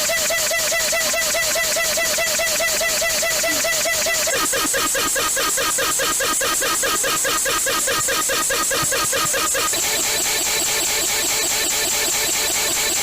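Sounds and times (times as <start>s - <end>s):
electronic emergency alarm warble: 0.0s - 6.8s, 9.6s - 13.0s.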